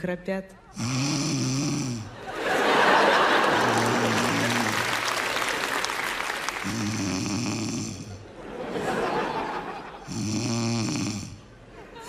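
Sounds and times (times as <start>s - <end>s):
woman snoring: 0.7s - 2.2s, 3.4s - 5.4s, 6.5s - 8.2s, 10.0s - 11.4s.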